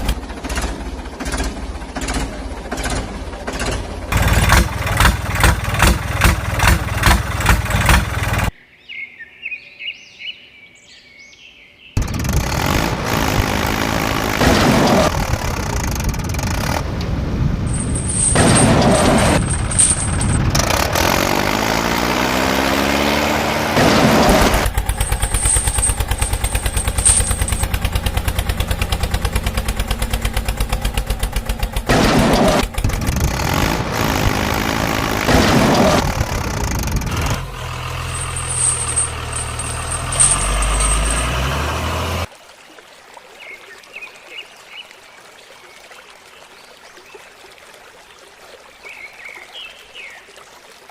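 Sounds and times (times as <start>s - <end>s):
heavy vehicle engines revving: 0.0s - 8.5s, 12.0s - 42.3s.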